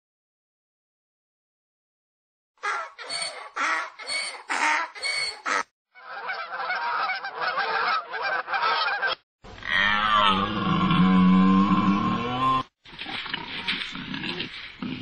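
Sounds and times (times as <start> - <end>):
animal chattering: 2.6 - 5.7.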